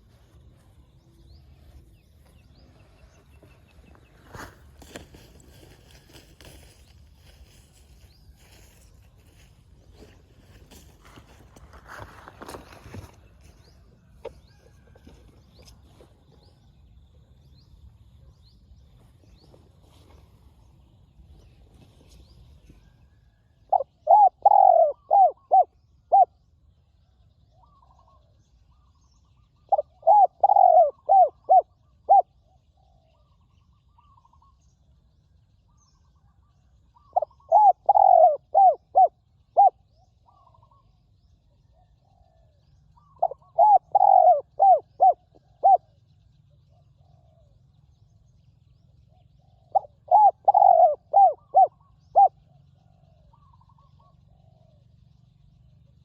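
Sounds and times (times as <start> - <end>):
dove cooing: 23.7 - 26.4, 29.6 - 32.9, 37.0 - 40.8, 41.8 - 46.0, 49.1 - 54.9.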